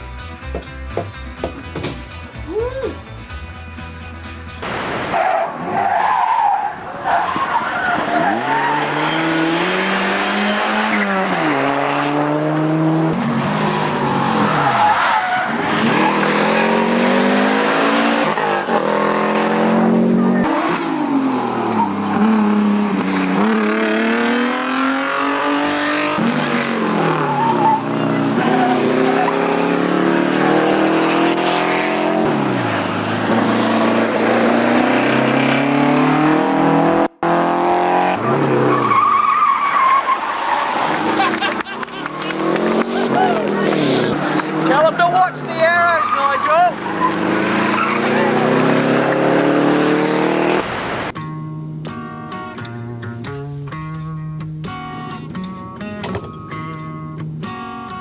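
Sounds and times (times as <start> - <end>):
car engine revving: 7.5 - 51.1.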